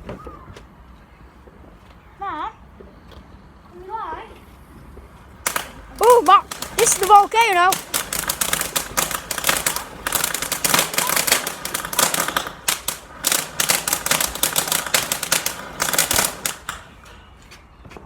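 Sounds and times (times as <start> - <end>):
firework crackling: 5.4 - 17.2.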